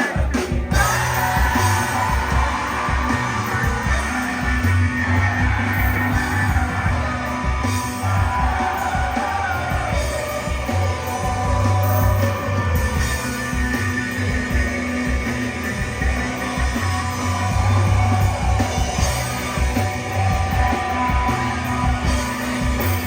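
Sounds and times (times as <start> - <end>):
person singing: 0.0 - 14.5
rock band playing live: 0.0 - 23.0.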